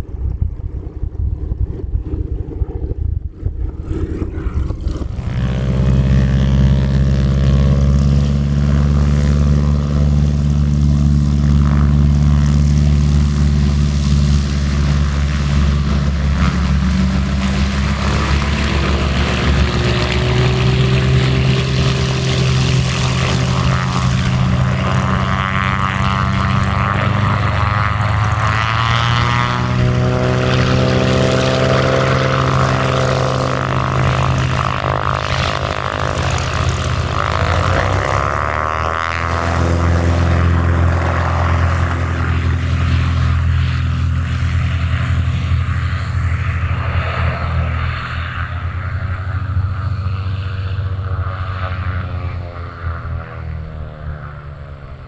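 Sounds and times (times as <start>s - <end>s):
propeller airplane engine drone: 0.0s - 55.0s.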